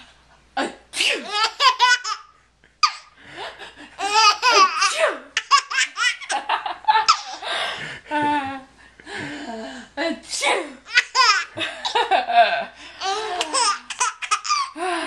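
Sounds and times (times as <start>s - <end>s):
person sneezing: 0.6s - 1.3s, 4.6s - 5.3s
child laughing: 4.0s - 7.4s.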